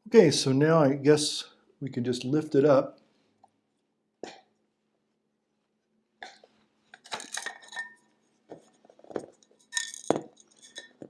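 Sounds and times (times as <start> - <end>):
metallic clinks and knocks: 7.0 - 11.0.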